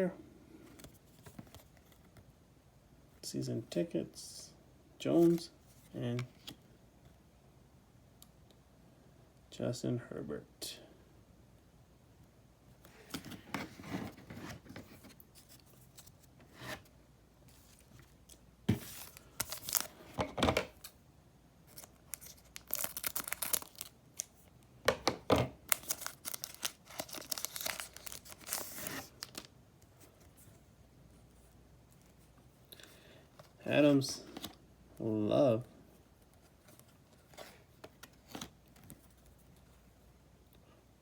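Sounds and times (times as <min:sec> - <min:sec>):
wrapper crinkling: 0:21.7 - 0:24.0, 0:25.7 - 0:29.5.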